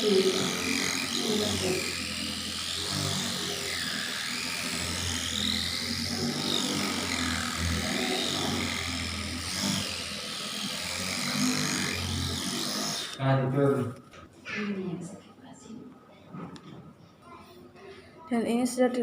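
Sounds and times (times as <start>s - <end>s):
electric massager buzzing: 0.0s - 13.6s.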